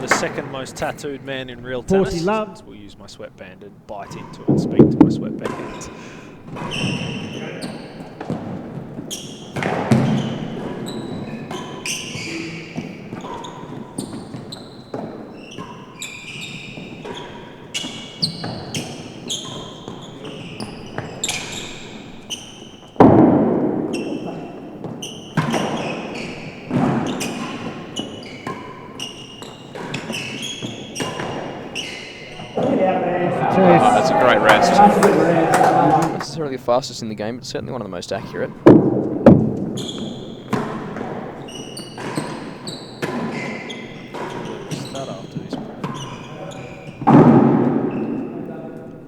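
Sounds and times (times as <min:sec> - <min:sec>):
ball bouncing off walls: 0:00.0 - 0:02.7, 0:04.0 - 0:36.3, 0:38.6 - 0:44.8, 0:47.0 - 0:48.4
shoes squeaking on floor: 0:00.0 - 0:36.6, 0:37.2 - 0:49.0
racket hitting ball: 0:04.5 - 0:07.2.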